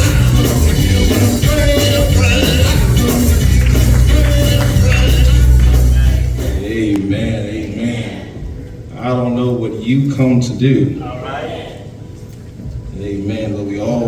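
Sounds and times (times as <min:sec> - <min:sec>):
drums: 0:00.0 - 0:06.9
heavy bass line: 0:00.0 - 0:06.9
gospel singing: 0:00.0 - 0:09.6.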